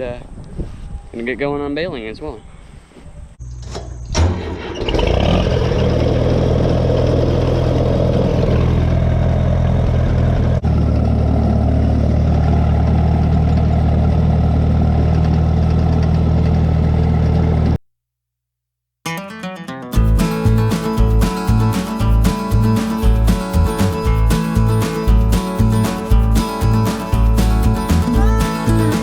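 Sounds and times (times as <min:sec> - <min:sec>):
tractor engine running: 0:04.2 - 0:17.8, 0:20.0 - 0:29.0.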